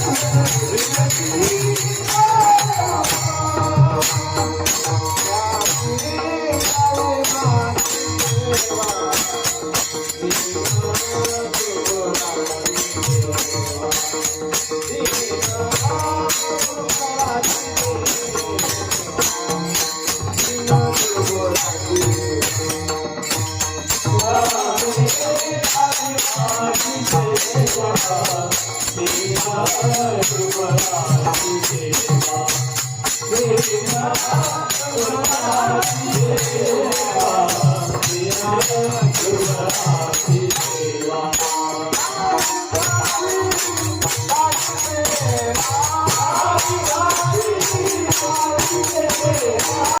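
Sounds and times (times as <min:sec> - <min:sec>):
group singing: 0:00.0 - 0:23.1, 0:23.9 - 0:50.0
hand cymbals clashing: 0:00.0 - 0:50.0
drum beat: 0:41.9 - 0:50.0.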